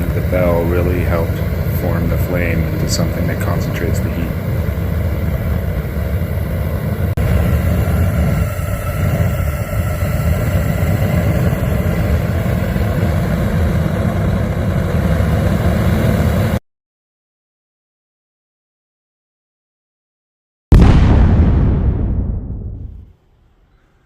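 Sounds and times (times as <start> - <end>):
gas burner flame rushing: 0.0 - 16.6.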